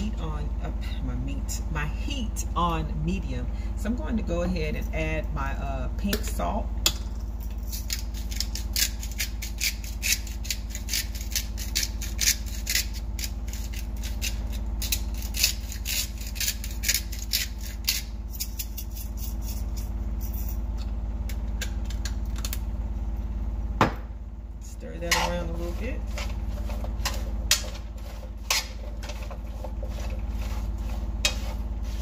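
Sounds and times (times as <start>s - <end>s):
steady low hum: 0.0s - 32.0s.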